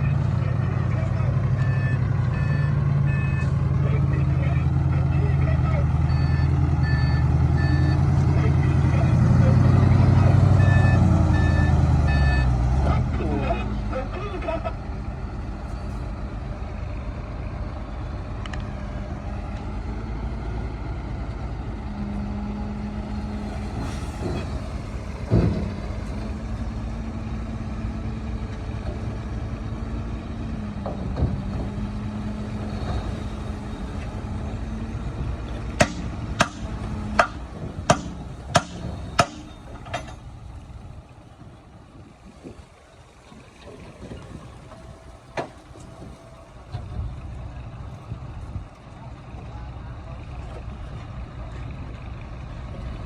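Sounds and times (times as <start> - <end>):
heavy diesel machinery running: 0.0 - 53.0
loud thump: 23.8 - 26.2
sharp knocks: 35.8 - 40.2.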